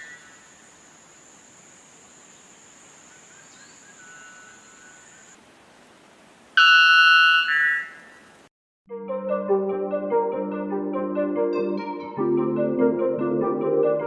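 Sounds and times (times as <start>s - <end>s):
high insect buzz: 0.0s - 5.4s.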